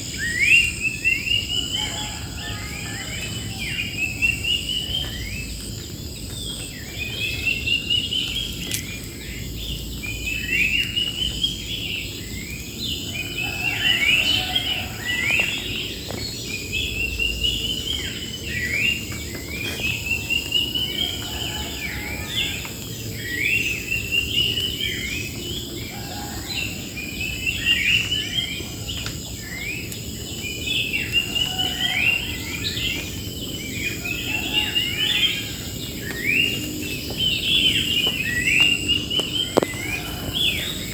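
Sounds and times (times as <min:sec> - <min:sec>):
birds singing: 0:00.0 - 0:40.9
high insect drone: 0:00.0 - 0:40.9.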